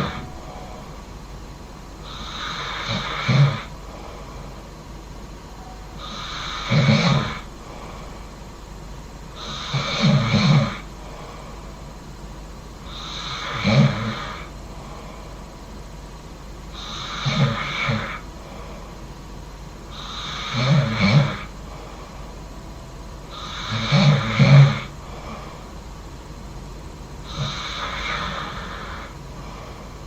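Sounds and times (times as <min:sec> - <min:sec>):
quiet breathing: 0:00.0 - 0:16.1, 0:16.7 - 0:26.1, 0:27.2 - 0:30.0
person snoring loudly: 0:02.1 - 0:03.7, 0:06.0 - 0:07.5, 0:09.4 - 0:10.8, 0:12.9 - 0:14.5, 0:16.8 - 0:18.2, 0:20.0 - 0:21.5, 0:23.3 - 0:25.5, 0:27.2 - 0:29.2.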